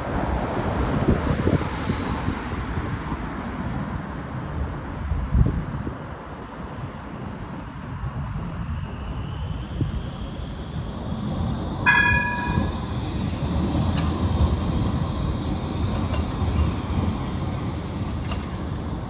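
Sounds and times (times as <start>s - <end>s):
tram wheels rumbling: 0.0s - 19.0s
short high-pitched tone: 11.9s - 12.9s.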